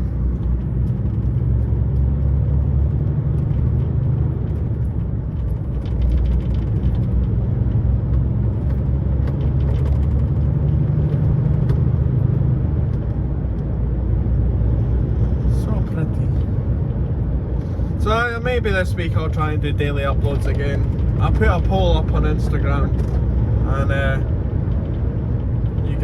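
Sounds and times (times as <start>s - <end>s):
lorry diesel engine and road noise: 0.0s - 26.0s.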